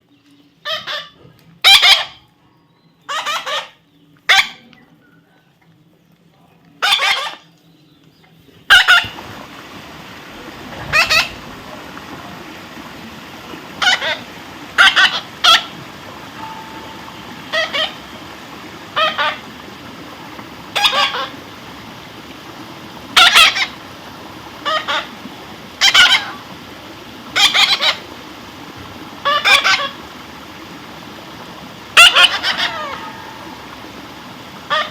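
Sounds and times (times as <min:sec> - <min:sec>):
steady background hiss: 0:07.6 - 0:34.9.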